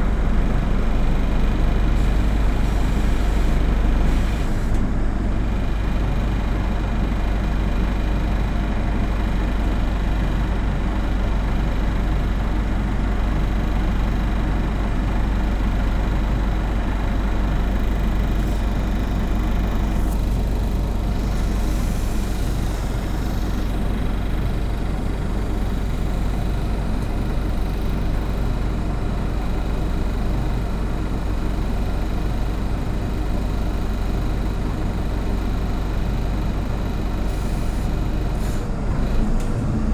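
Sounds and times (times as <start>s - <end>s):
bus diesel engine running: 0.0s - 39.9s.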